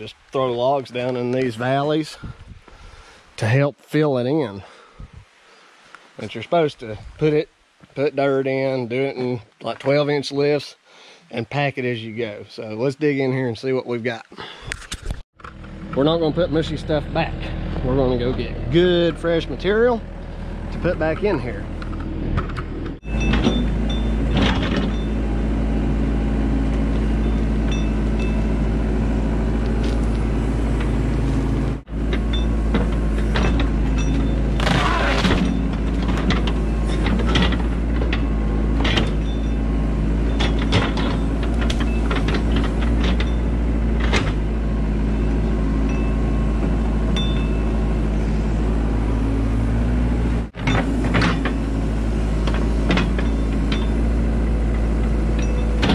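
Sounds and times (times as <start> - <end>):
machine engine running: 15.4 - 55.9.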